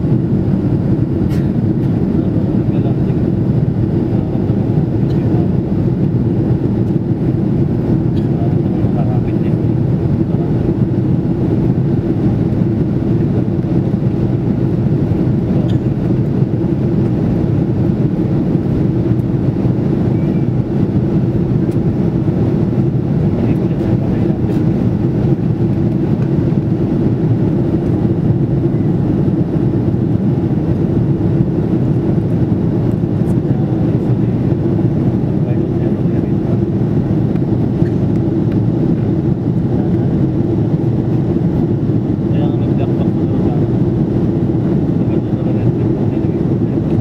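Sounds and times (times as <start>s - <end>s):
airliner cabin engine roar: 0.0s - 47.0s.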